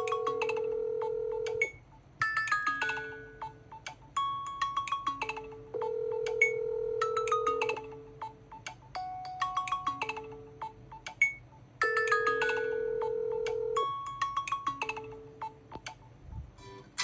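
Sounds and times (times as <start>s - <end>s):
smartphone marimba ringtone: 0.0s - 3.6s, 4.2s - 8.1s, 8.9s - 10.6s, 11.8s - 15.5s.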